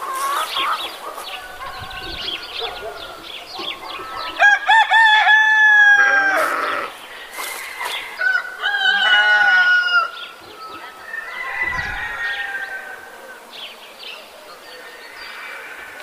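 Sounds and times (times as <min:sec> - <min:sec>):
rooster crowing: 0:04.0 - 0:06.9, 0:08.1 - 0:10.2, 0:10.8 - 0:13.4.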